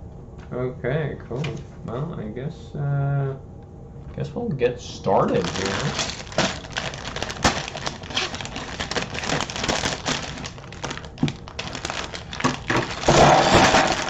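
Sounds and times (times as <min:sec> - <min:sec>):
plastic bags crinkling and tearing: 0:05.2 - 0:14.0
plastic pieces spilling clatter: 0:05.3 - 0:14.0
plastic pieces clicking and rattling: 0:05.4 - 0:14.0.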